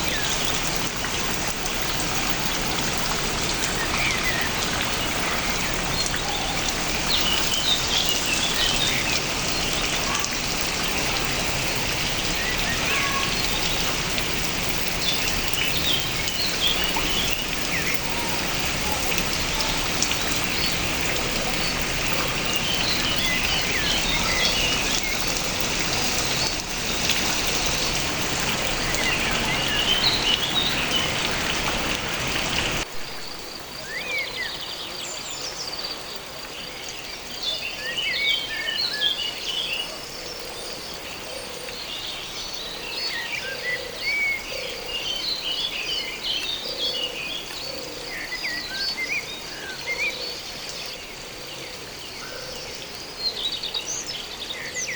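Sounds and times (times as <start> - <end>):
small birds chirping: 0.0 - 32.9
rain pattering: 0.0 - 54.9.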